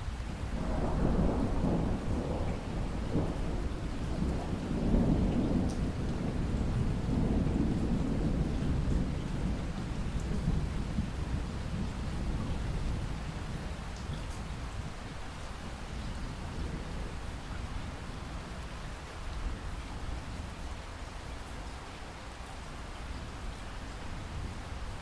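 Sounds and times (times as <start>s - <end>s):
steady rainfall: 0.0s - 25.0s
thunder rumbling: 0.5s - 15.0s, 15.8s - 18.6s.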